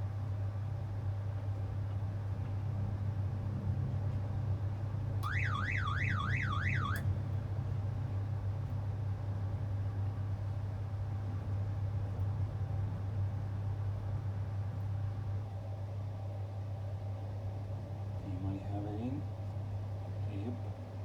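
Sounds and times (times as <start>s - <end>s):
warbling wind alarm: 5.2s - 7.1s
crane engine humming: 5.2s - 8.3s.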